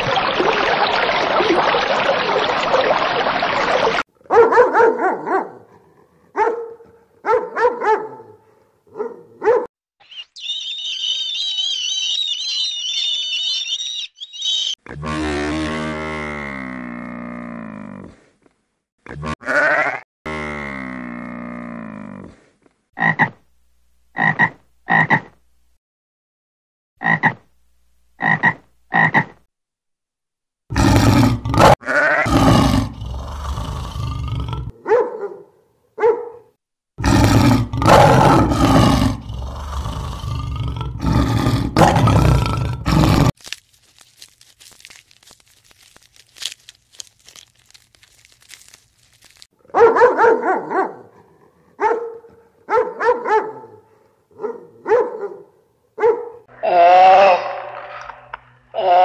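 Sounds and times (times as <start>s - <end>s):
dog barking: 4.2s - 9.7s, 34.8s - 36.5s, 49.6s - 56.5s.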